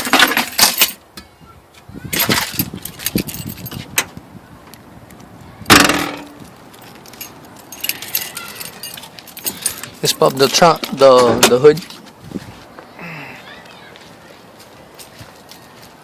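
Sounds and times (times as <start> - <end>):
keys jangling: 2.2 - 3.8, 6.7 - 10.6.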